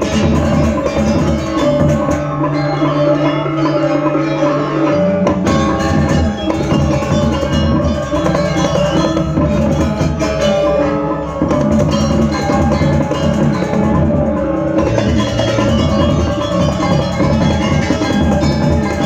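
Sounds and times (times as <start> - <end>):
drums: 0.0 - 2.4, 5.2 - 19.0
gamelan ensemble playing: 0.0 - 19.0
metal gong and metallophone tones: 0.0 - 19.0.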